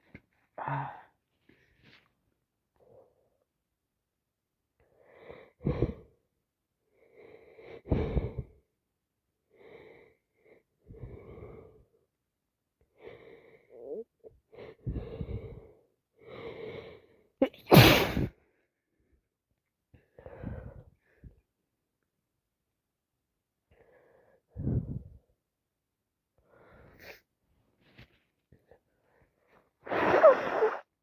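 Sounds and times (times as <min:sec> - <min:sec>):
person sneezing loudly: 0:17.4 - 0:18.3, 0:29.9 - 0:30.8.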